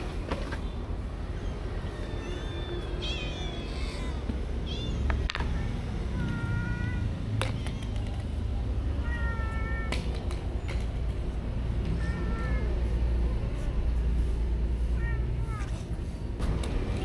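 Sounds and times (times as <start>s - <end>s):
cat meowing: 1.9s - 7.1s, 8.9s - 10.0s, 11.8s - 13.1s, 14.7s - 16.0s.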